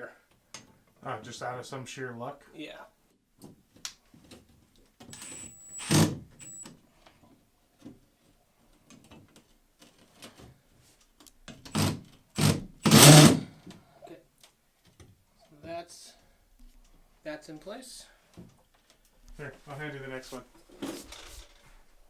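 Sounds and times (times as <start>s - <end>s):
cordless drill whining: 5.1s - 6.7s, 11.8s - 13.4s.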